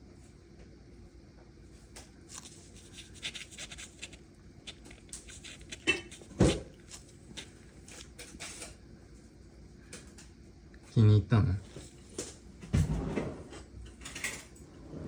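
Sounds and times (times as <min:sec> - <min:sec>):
scratchy rustles on cardboard: 0:02.3 - 0:08.6.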